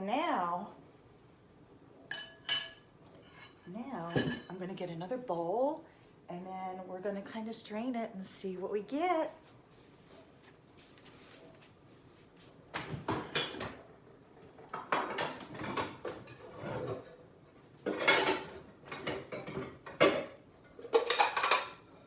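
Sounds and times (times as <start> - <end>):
bowls and dishes clattering: 2.1 - 4.5, 12.8 - 13.8, 14.6 - 17.2, 17.8 - 21.9.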